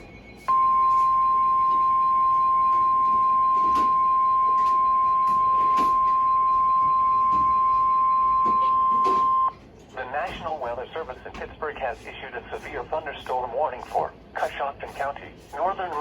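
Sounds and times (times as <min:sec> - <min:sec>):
steady high-pitched warning tone: 0:00.0 - 0:09.6.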